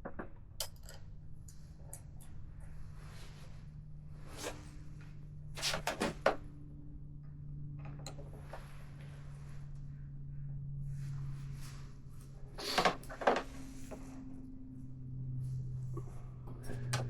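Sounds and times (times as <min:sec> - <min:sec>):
steady low hum: 0:00.0 - 0:17.0
small parts clicking and clattering: 0:00.1 - 0:02.4.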